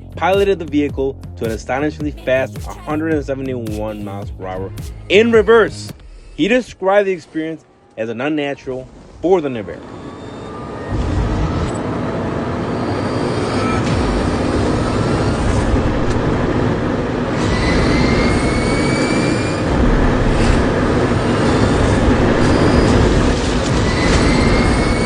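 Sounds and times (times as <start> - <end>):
wind and tyre noise: 8.4 - 25.0.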